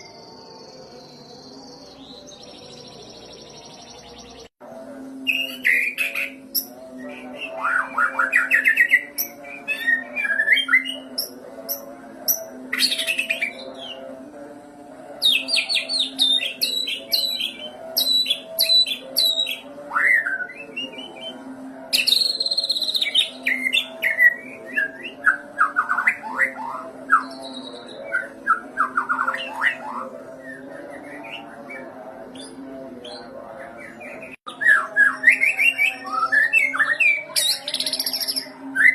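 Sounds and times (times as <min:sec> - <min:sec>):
songbird singing whistles and trills: 0:05.3 - 0:13.9, 0:15.3 - 0:21.3, 0:34.2 - 0:38.9.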